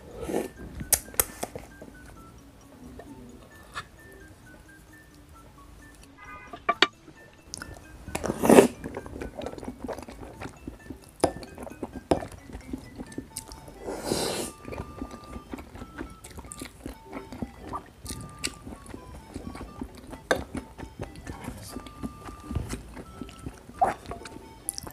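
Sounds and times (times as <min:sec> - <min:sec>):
soft background music: 0:00.0 - 0:24.9
person chewing: 0:07.5 - 0:24.9.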